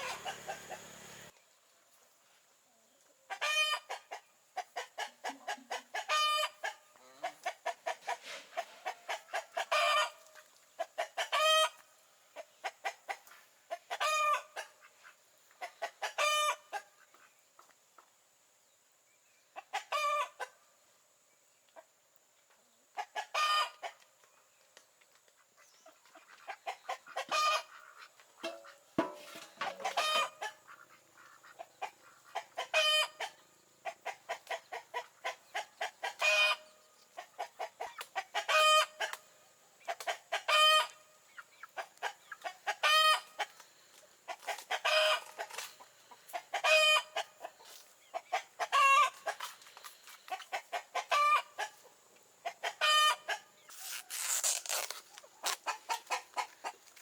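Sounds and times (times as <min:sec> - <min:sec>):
chickens clucking: 0:00.0 - 0:01.3, 0:03.0 - 0:18.2, 0:19.5 - 0:20.7, 0:22.9 - 0:54.0, 0:55.1 - 0:57.0
short pitched chicken calls: 0:00.0 - 0:01.3, 0:13.9 - 0:17.0, 0:29.6 - 0:36.7, 0:37.6 - 0:39.2, 0:44.3 - 0:45.7, 0:46.3 - 0:49.6, 0:52.4 - 0:56.5.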